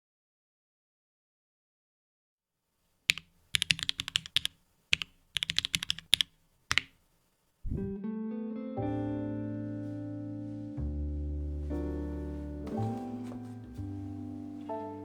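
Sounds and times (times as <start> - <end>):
music: 7.8 - 15.0.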